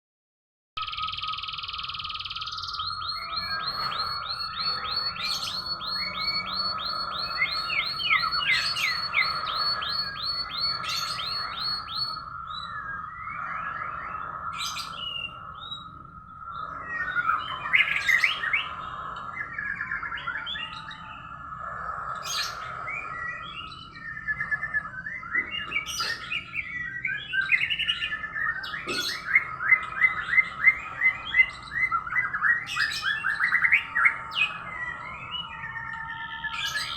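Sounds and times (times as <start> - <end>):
canary singing trills and chirps: 0.8 - 36.9
steady high tone: 1.1 - 24.2.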